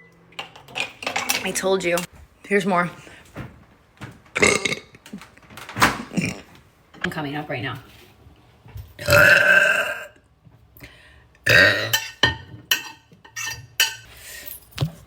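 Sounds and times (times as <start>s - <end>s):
woman burping: 4.4s - 5.1s, 6.1s - 6.6s, 9.0s - 10.2s, 11.4s - 12.0s.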